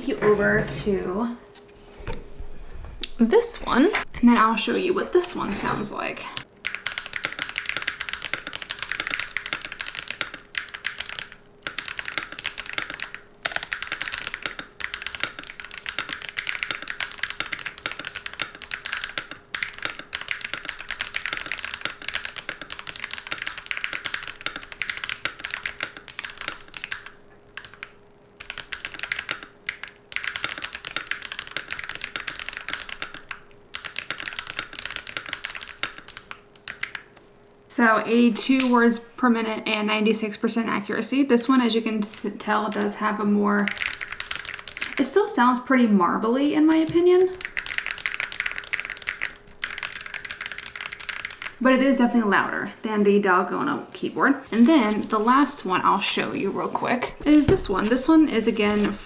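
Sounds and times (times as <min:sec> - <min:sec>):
mechanical keyboard typing: 0:05.2 - 0:37.2, 0:42.4 - 0:42.9, 0:43.6 - 0:45.2, 0:46.7 - 0:52.3, 0:57.2 - 0:59.0.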